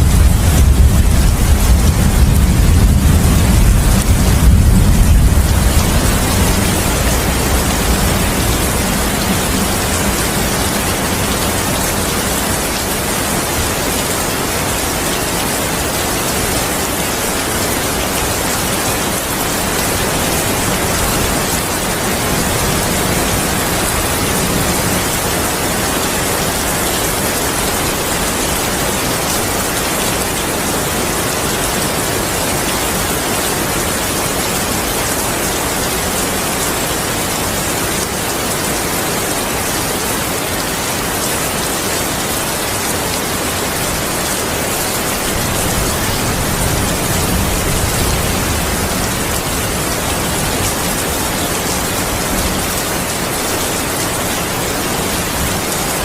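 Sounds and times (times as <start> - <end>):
low thunder rumble: 0.0 - 12.4
heavy rain falling: 0.0 - 56.0.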